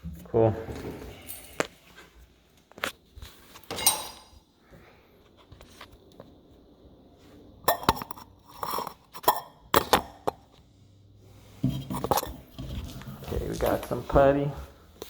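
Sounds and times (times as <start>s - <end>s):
metal parts clinking and scraping: 3.6s - 4.4s.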